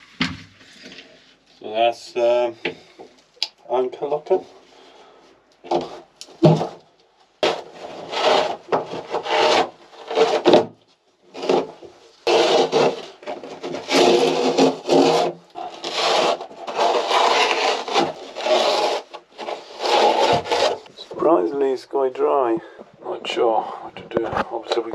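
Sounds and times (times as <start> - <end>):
carpet ripping: 11.4 - 20.8.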